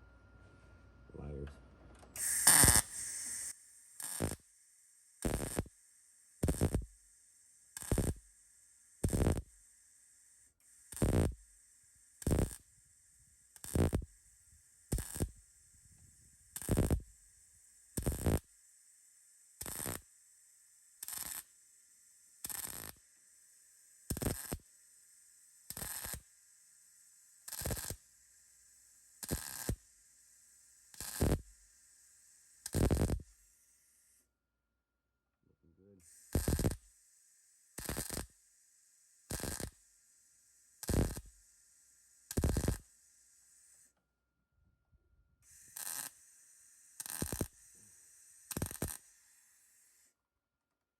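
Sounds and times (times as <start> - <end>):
faint steady hum: 0.0 - 34.3
welding arc bursts: 2.2 - 4.5, 5.1 - 9.6, 10.8 - 18.6, 19.5 - 20.2, 20.9 - 21.6, 22.4 - 23.0, 24.0 - 24.7, 25.6 - 26.3, 27.4 - 28.2, 28.8 - 30.0, 30.7 - 31.7, 32.5 - 33.4, 36.1 - 37.0, 37.7 - 38.4, 39.2 - 39.9, 40.7 - 41.5, 42.2 - 42.9, 45.5 - 50.0.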